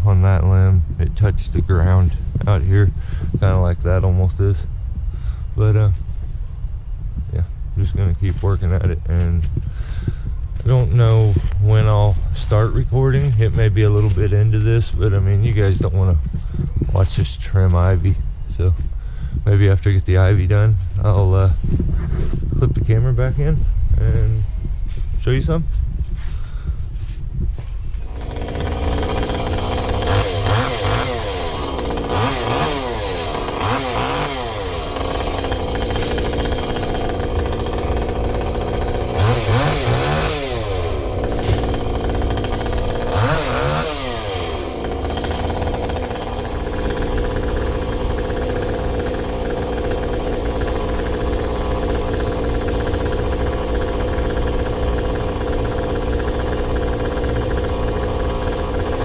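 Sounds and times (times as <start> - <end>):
chainsaw engine revving: 28.0 - 59.0.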